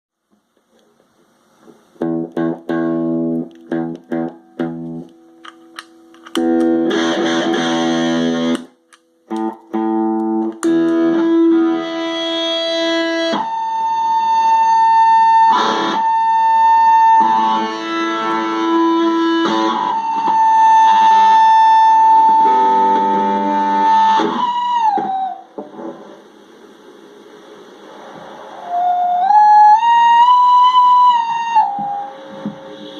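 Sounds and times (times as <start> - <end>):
distorted electric guitar: 1.3 - 32.9
steady high tone: 27.2 - 32.9.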